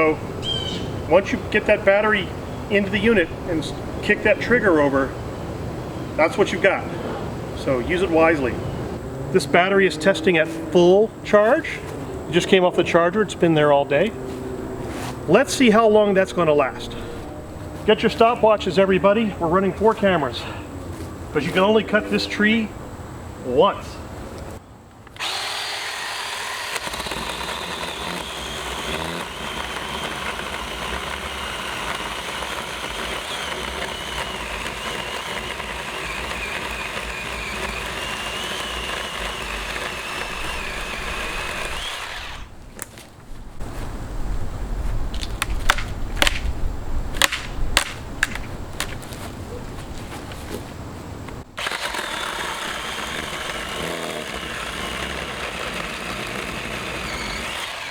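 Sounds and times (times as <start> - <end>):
electric chainsaw running: 25.1 - 42.6, 51.6 - 57.9
wood cracking and snapping: 25.2 - 43.1, 45.2 - 46.5, 47.2 - 49.0.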